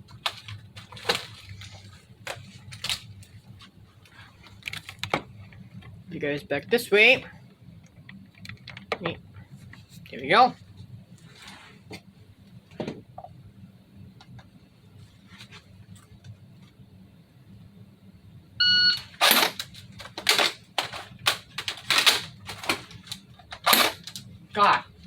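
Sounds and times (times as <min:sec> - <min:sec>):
shot timer beep: 0:18.6 - 0:19.0.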